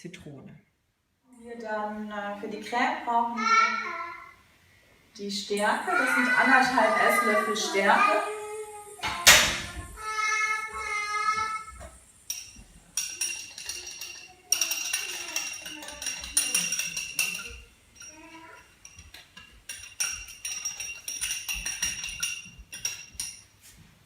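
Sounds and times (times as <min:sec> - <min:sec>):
metal utensil clinking on pot: 0:12.2 - 0:23.6.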